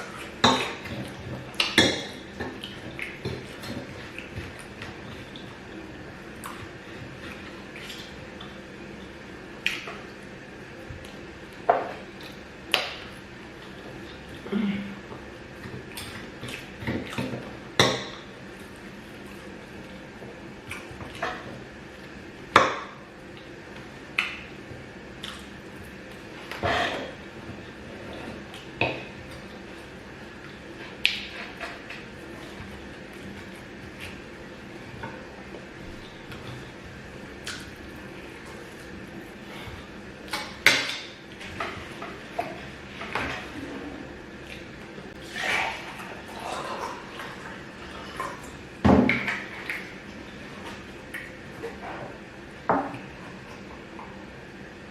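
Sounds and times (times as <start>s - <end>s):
wet chewing sounds: 25.2s - 40.5s.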